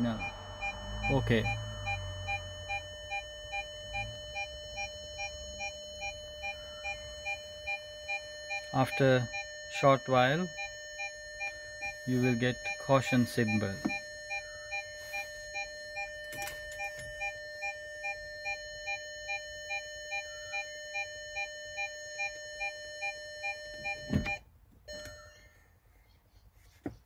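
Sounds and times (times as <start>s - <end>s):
high-pitched speaker whine: 0.0s - 4.4s
electronic warning beep: 0.0s - 25.6s.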